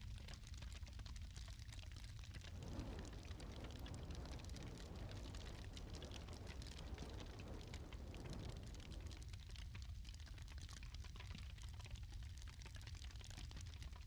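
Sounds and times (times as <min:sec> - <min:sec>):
wood fire crackling: 0:00.2 - 0:14.0
soft rushing hiss: 0:02.2 - 0:10.0.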